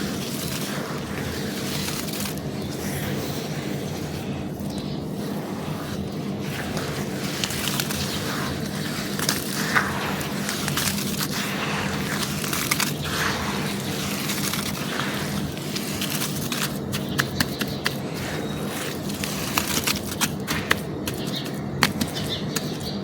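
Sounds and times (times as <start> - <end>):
brittle material crunching: 0.0 - 5.0, 5.9 - 23.0.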